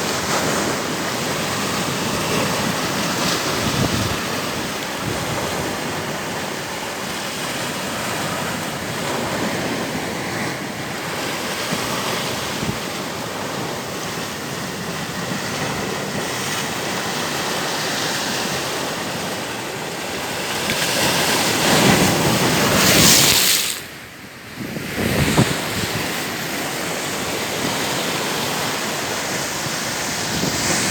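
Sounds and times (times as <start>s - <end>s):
rushing water: 15.9s - 24.4s, 25.0s - 30.9s.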